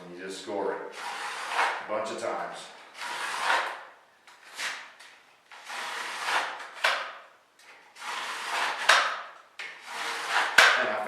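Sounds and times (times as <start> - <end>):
knife blade scraping board: 5.6 - 7.0, 9.7 - 10.7.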